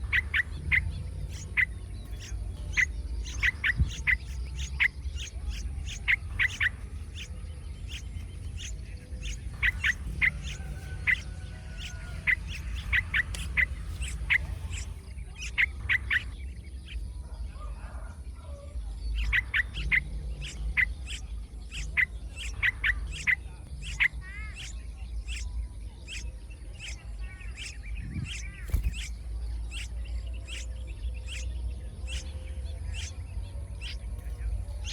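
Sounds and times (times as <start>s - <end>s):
steady low rumble: 0.0s - 17.5s, 18.8s - 34.9s
songbird chick chirping: 0.0s - 34.9s.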